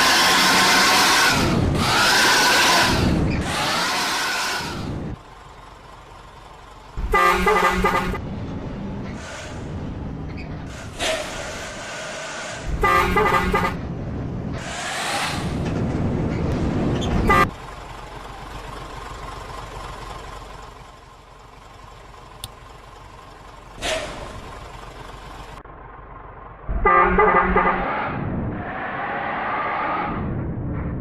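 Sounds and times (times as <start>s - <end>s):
bus horn trilling: 7.0s - 8.2s, 12.7s - 13.8s, 17.2s - 17.5s, 26.7s - 27.9s.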